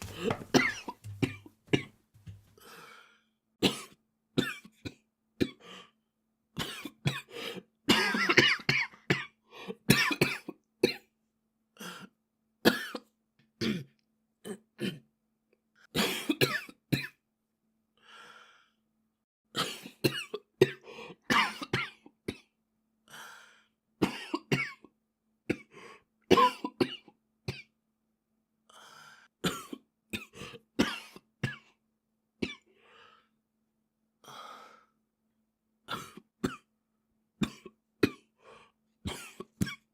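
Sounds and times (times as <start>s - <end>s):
boy coughing: 0.0s - 1.9s.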